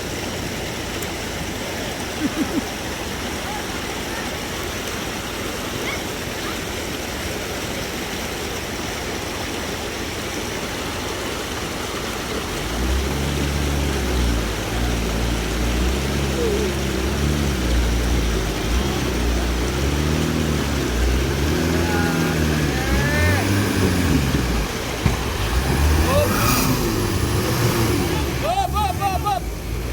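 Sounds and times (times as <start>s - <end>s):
waterfall rushing: 0.0s - 29.9s
off-road vehicle engine revving: 10.6s - 29.9s.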